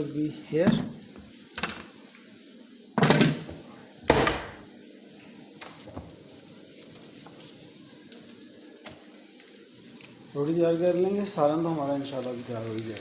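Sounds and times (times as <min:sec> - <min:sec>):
pot set down knock: 0:03.0 - 0:04.6.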